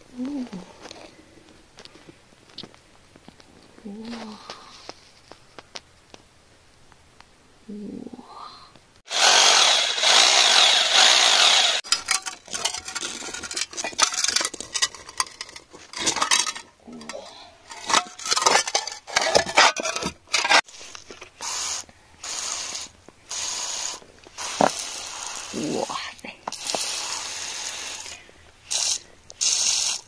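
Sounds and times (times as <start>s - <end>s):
crackling: 8.7s - 22.0s
loud rough scraping: 9.1s - 21.0s.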